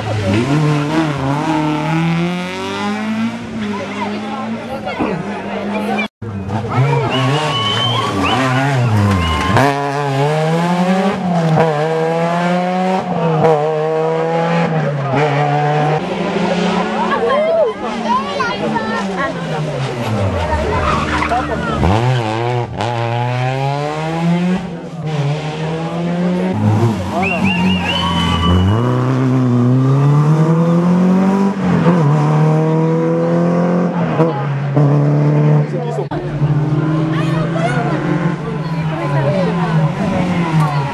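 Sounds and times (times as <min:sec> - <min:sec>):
rally car engine accelerating: 0:00.0 - 0:40.9.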